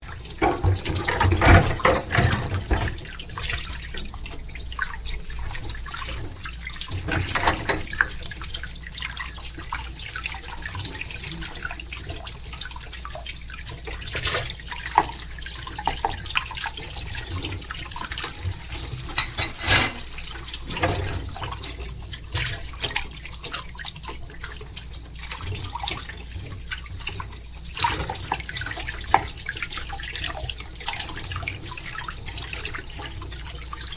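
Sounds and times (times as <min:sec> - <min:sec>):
tap water running: 0:00.0 - 0:33.9
dishes clinking and clattering: 0:00.4 - 0:03.0, 0:07.0 - 0:08.1, 0:18.3 - 0:21.4.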